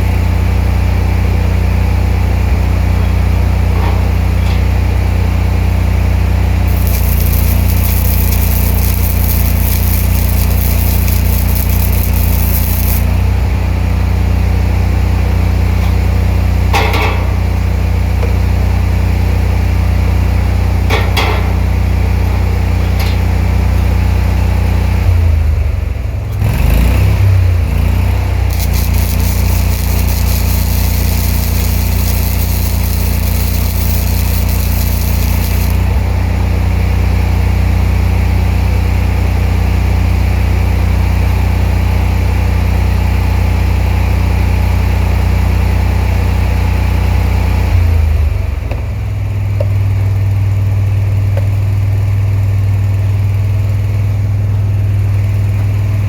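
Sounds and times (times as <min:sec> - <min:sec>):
generator engine running: 0:06.4 - 0:14.0, 0:28.2 - 0:36.7
welding hiss and crackle: 0:06.6 - 0:13.4, 0:27.9 - 0:36.0
short sharp clicks: 0:28.5 - 0:35.8.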